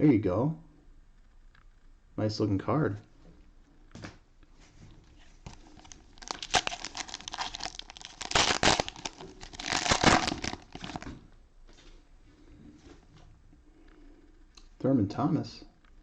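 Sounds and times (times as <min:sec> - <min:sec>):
plastic wrapper crinkling and tearing: 0:05.4 - 0:11.2.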